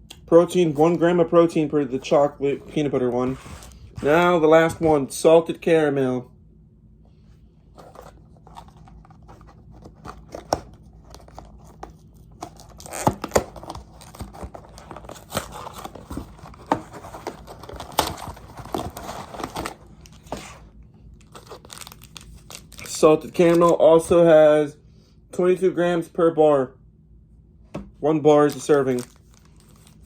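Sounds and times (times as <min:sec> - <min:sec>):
plastic wrapper crackling: 0:21.4 - 0:23.0.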